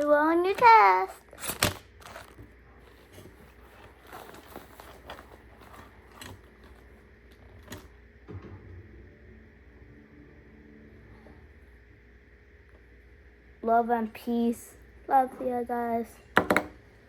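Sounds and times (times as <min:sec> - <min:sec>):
clicks and rustles of small items: 0:00.5 - 0:07.0.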